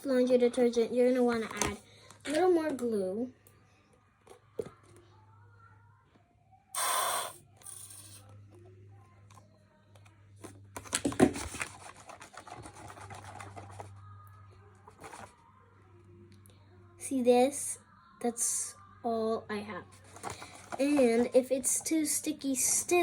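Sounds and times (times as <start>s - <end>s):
air hissing from glue bottle: 6.8s - 8.2s.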